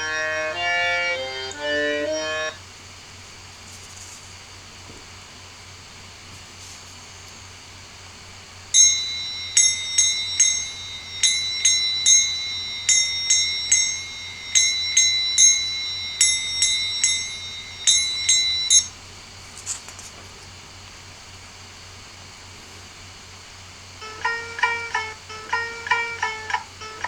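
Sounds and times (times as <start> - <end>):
small metal bell strikes: 8.8 - 18.9.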